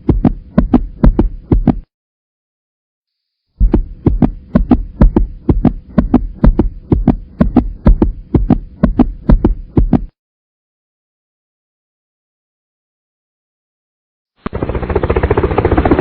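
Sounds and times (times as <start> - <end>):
heavy double thumps: 0.0 - 1.9, 3.6 - 10.1
faint steady hum: 3.6 - 10.1.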